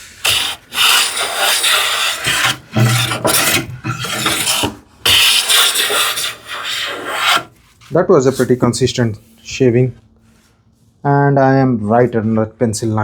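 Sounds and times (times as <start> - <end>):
hand plane scraping wood: 0.0 - 7.6.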